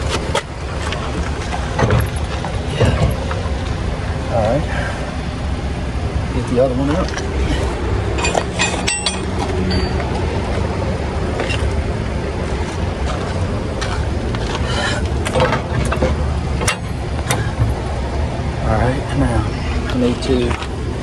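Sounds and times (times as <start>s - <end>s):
steady low rumble: 0.0s - 21.0s
metal bars knocking and clinking: 8.1s - 10.2s, 15.2s - 17.7s.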